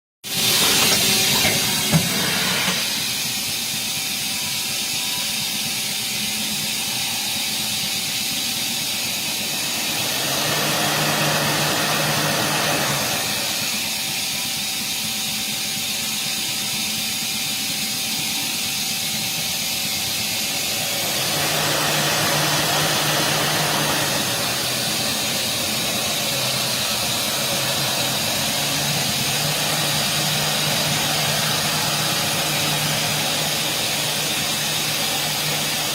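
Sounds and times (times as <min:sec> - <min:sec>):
lathe running with high hiss: 0:00.2 - 0:35.9
wash of noise: 0:09.2 - 0:14.2, 0:20.2 - 0:35.9.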